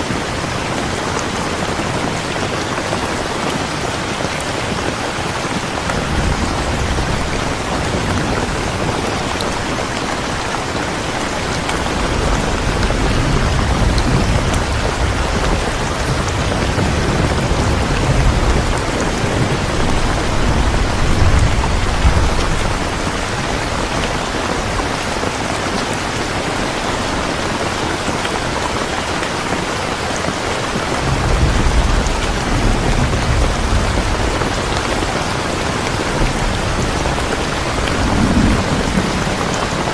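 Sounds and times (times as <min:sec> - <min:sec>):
heavy rain hissing: 0:00.0 - 0:39.9
low rumbles of thunder: 0:05.7 - 0:25.5, 0:31.0 - 0:39.9.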